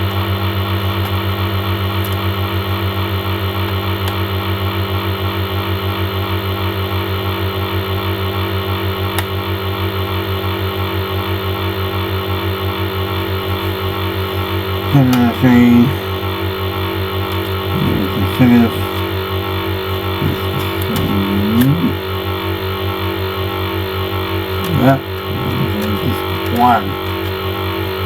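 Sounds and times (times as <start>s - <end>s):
pulsing low mechanical hum: 8.5s - 28.0s.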